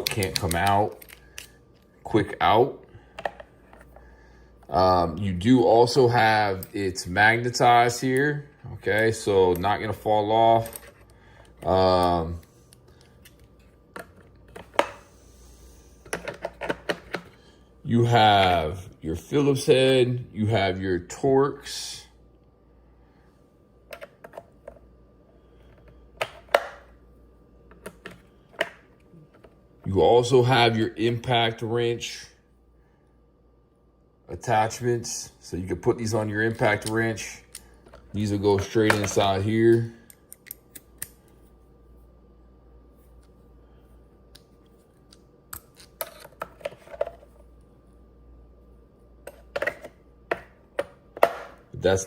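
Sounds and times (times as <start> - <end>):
screwdriver bits clicking in case: 0.0 - 1.5.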